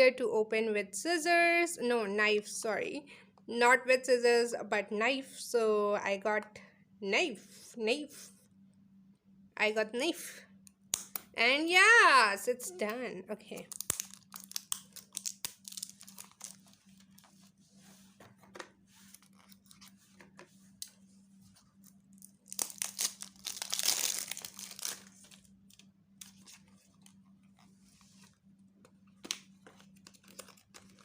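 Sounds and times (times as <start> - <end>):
faint low hum: 0.0 - 31.0
packaging rustling and tearing: 13.6 - 17.3, 19.1 - 20.0, 21.8 - 27.7, 29.3 - 31.0.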